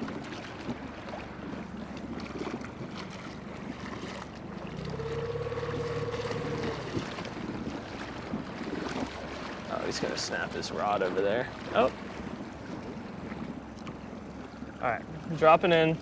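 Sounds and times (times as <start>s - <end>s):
boat motor low hum: 0.0s - 16.0s
water noise: 0.0s - 16.0s
wind: 0.0s - 16.0s
higher steady hum: 4.6s - 7.6s.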